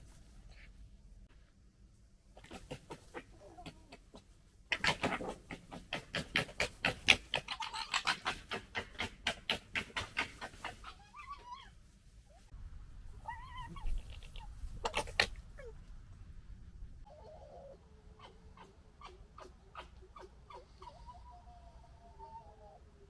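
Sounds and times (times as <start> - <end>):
fox cubs chattering: 2.4 - 11.7, 13.2 - 15.8, 17.0 - 22.8.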